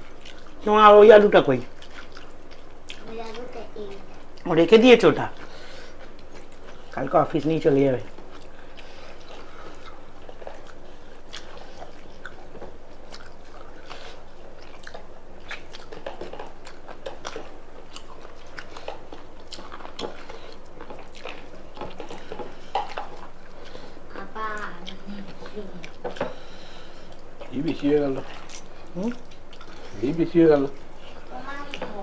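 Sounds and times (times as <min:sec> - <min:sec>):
people chewing food: 0:00.0 - 0:32.0.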